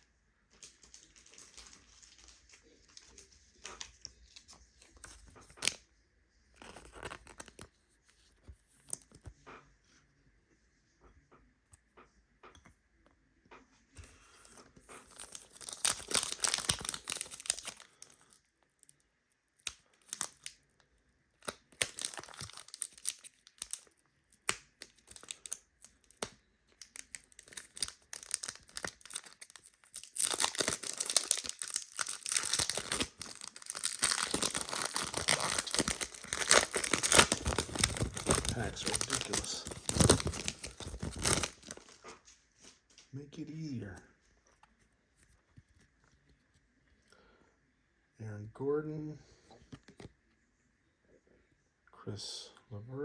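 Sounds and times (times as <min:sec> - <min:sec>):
card pack wrappers tearing: 0:06.6 - 0:07.7, 0:14.4 - 0:18.4, 0:19.6 - 0:20.6, 0:21.4 - 0:42.0.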